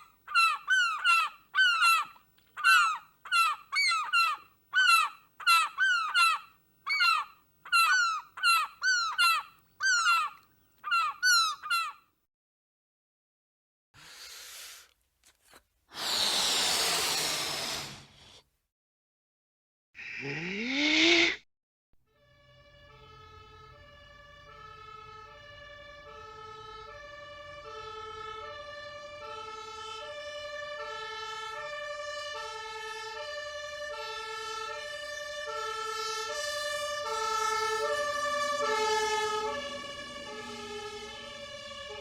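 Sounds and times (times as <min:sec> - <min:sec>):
two-tone emergency siren: 0:22.0 - 0:42.0.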